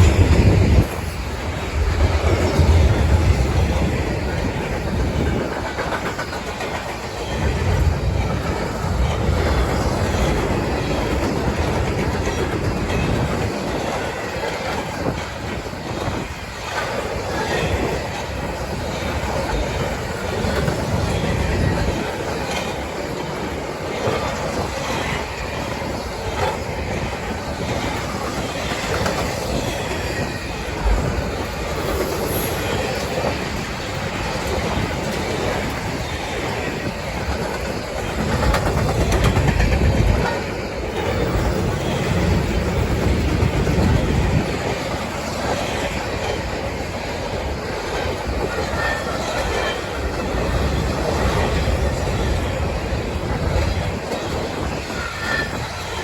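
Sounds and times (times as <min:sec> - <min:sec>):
freight train wheels clattering: 0:00.0 - 0:56.0.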